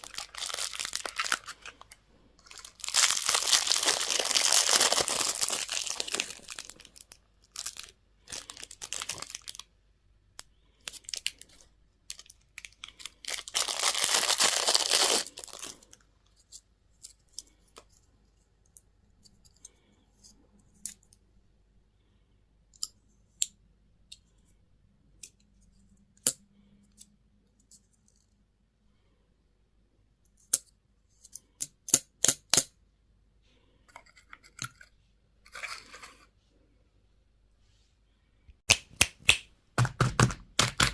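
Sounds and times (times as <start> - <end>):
packaging crinkling and tearing: 0.0 - 9.6, 10.8 - 16.0.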